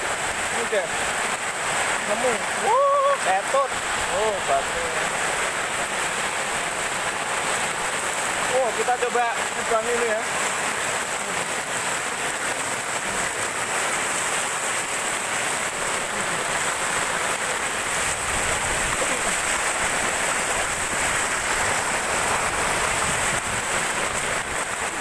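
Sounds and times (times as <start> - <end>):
heavy rain hissing: 0.0 - 25.0
low wind rumble: 13.5 - 25.0.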